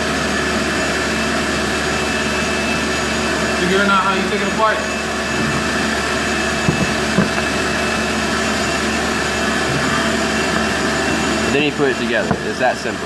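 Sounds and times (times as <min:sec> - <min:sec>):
appliance motor whirring: 0:02.7 - 0:13.0.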